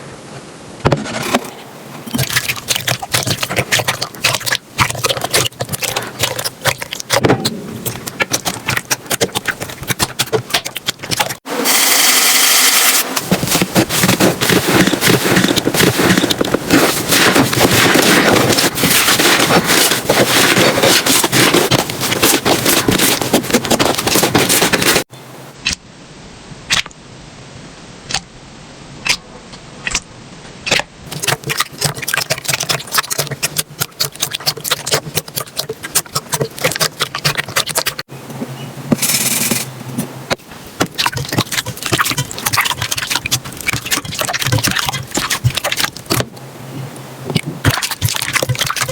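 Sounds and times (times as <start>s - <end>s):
slime crackling and popping: 2.1s - 11.4s, 13.2s - 25.8s, 30.6s - 38.1s, 41.0s - 46.2s, 47.6s - 48.9s.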